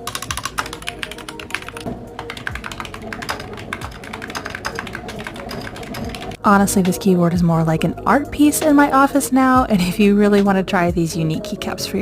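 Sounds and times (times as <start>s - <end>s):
mechanical keyboard typing: 0.0s - 6.4s
background music: 0.0s - 12.0s.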